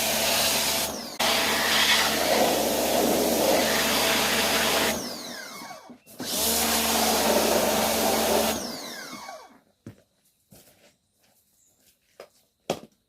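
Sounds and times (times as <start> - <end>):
pressure washer spraying water: 0.0 - 5.3, 6.2 - 8.7
motor spinning down whine: 0.0 - 9.6.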